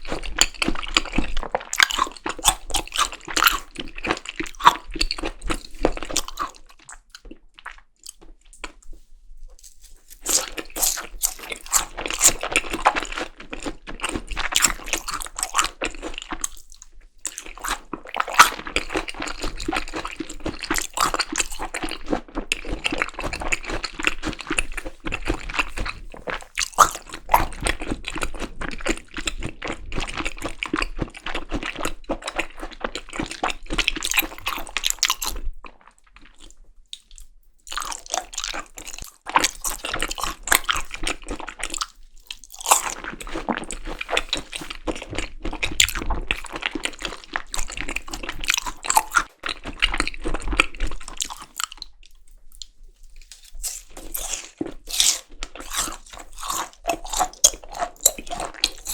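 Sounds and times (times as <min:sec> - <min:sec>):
chewing and biting raw meat: 0:00.0 - 0:08.9, 0:09.5 - 0:58.9
wet mouth clicks: 0:10.1 - 0:13.1, 0:50.6 - 0:58.9.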